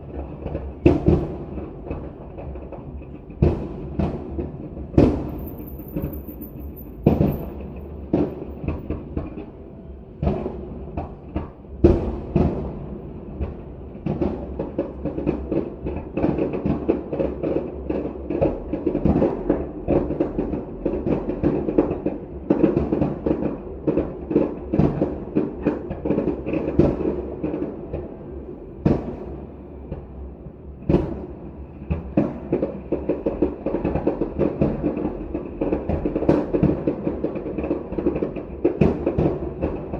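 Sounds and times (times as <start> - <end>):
fireworks booming and crackling: 0.0 - 5.4, 10.2 - 30.2, 30.8 - 39.9.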